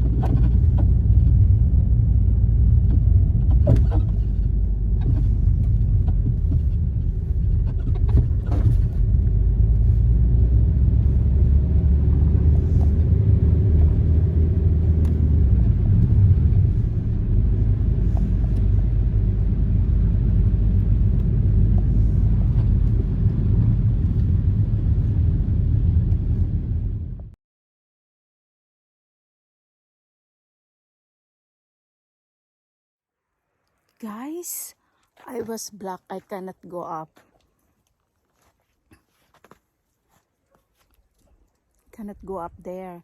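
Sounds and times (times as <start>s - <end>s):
car engine and tyre noise: 0.0s - 27.4s.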